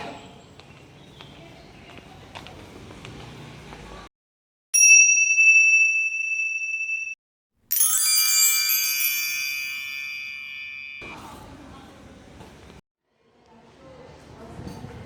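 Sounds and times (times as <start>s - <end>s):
bright shimmering chime: 4.8s - 11.2s.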